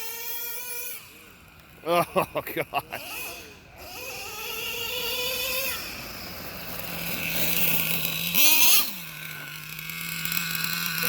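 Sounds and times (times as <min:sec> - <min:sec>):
car engine idling and revving: 0:02.9 - 0:11.0.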